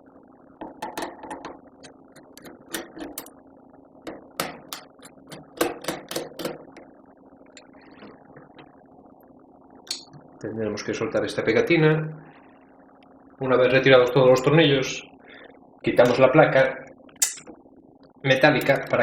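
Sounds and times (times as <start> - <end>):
screwdriver clicks and metallic taps: 4.4 - 6.6.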